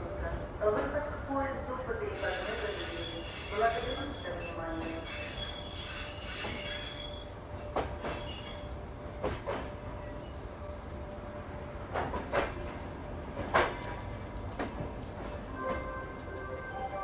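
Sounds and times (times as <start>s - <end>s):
train wheels squealing: 2.0s - 10.6s.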